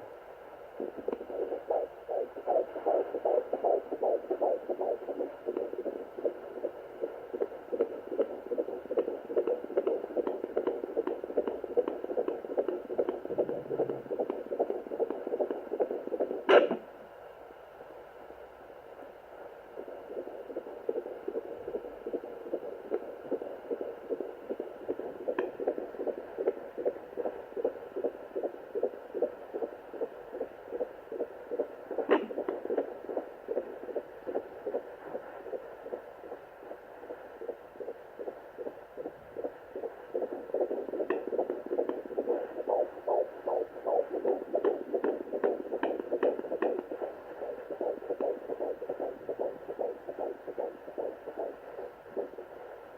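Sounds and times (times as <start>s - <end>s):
whooshing fetal heartbeat pulse: 0.0s - 16.8s, 19.4s - 52.9s
steady hum: 0.0s - 52.9s
probe clicks: 41.0s - 42.8s.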